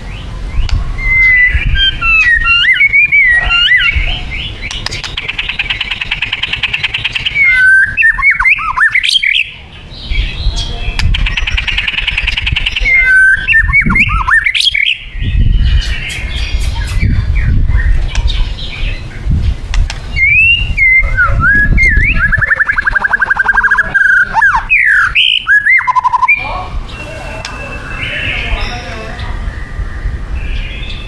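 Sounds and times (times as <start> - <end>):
bird whistling and trilling: 0.6 - 19.1, 20.1 - 31.0
sharp clicks: 4.6 - 7.3.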